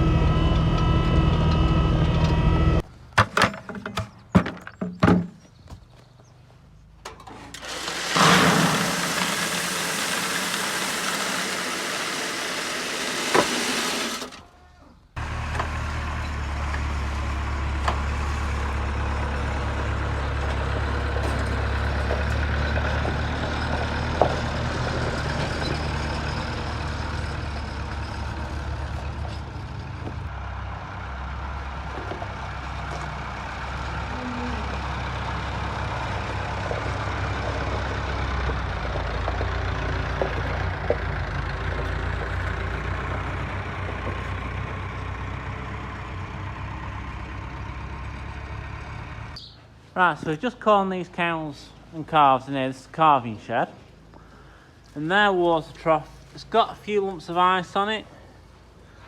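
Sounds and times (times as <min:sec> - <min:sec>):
heavy engine idling: 0:15.1 - 0:49.4
faint engine knocks: 0:34.8 - 0:44.9.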